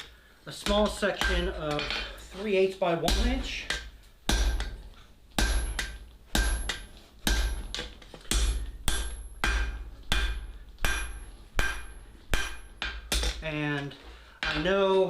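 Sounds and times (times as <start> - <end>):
hammer blows ringing on anvil: 5.4 - 13.4.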